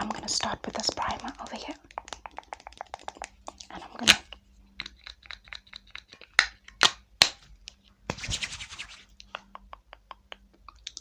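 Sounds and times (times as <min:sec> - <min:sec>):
light taps and ticks: 0:00.0 - 0:03.8.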